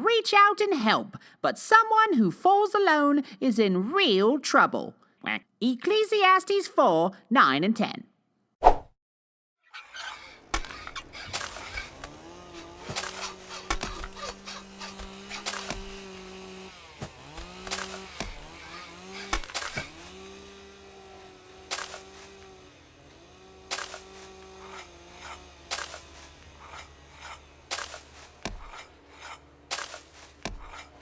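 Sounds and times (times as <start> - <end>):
saw droning: 9.8 - 31.0
wood splitting cracks: 10.2 - 31.0.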